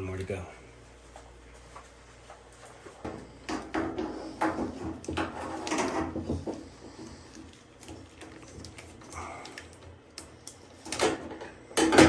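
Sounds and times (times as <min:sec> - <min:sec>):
scraping of machine parts: 0:03.5 - 0:07.3.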